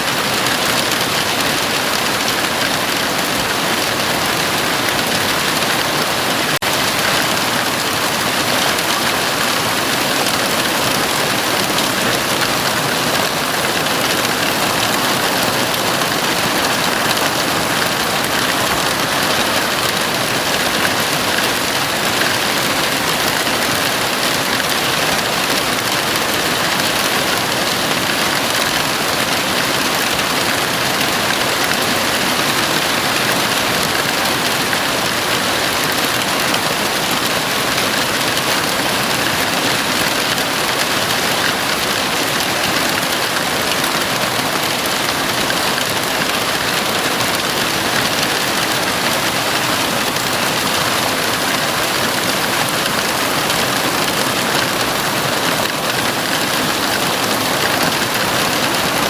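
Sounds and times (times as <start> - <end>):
heavy rain on roof: 0.0 - 59.0.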